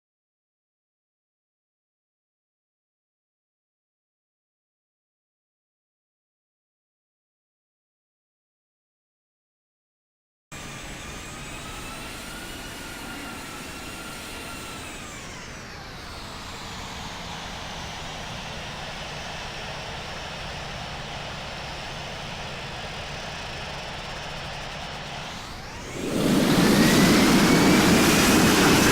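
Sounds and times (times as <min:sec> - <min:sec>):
jet engines rushing and whining: 0:10.6 - 0:28.9.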